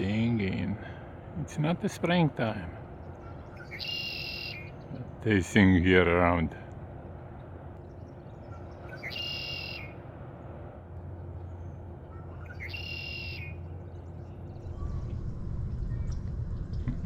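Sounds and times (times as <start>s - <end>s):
low steady rumble: 0.0s - 17.0s
bird singing buzzy trill: 1.9s - 5.9s, 7.7s - 16.8s.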